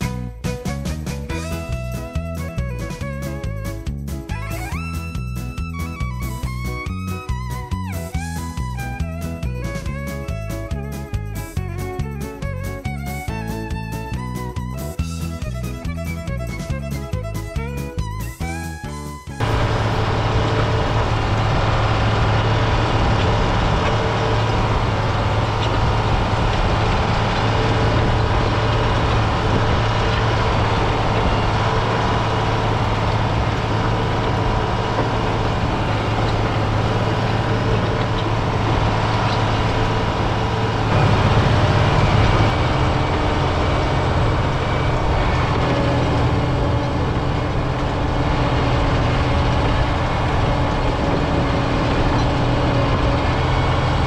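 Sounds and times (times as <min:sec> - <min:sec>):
diesel engine running: 0:01.1 - 0:54.0.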